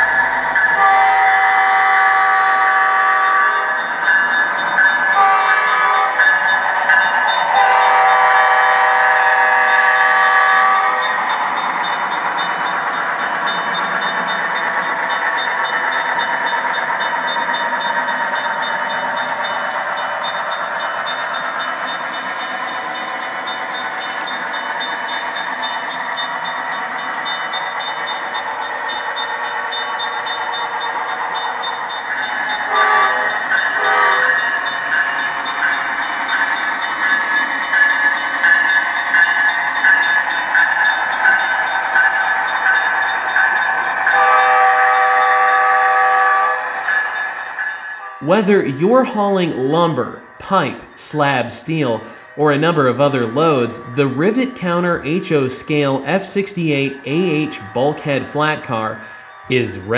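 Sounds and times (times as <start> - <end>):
train rumbling: 0.0 - 59.9
locomotive horn blasts: 0.8 - 3.8, 5.2 - 6.2, 7.6 - 11.1, 32.7 - 34.3, 44.2 - 46.6.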